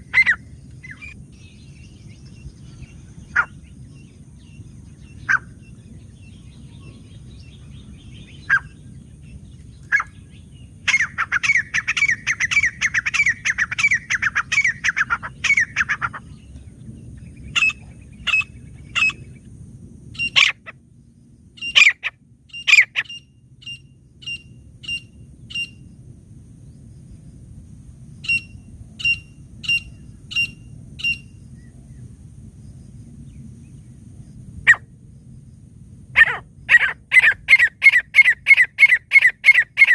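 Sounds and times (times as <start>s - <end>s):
francolin calling: 0.0s - 16.5s, 17.3s - 19.4s, 20.2s - 20.8s, 21.6s - 25.8s, 28.2s - 31.7s, 36.2s - 39.9s.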